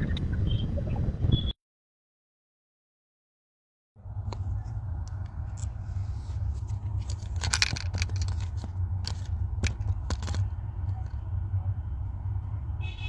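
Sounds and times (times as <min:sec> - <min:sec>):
scraping sounds: 0:04.2 - 0:11.2.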